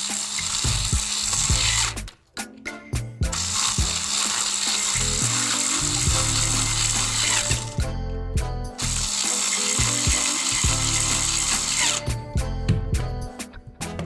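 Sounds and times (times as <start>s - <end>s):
small motor whirring and rattling: 0.0s - 2.2s, 3.2s - 7.9s, 8.8s - 12.2s
background music: 0.0s - 14.0s.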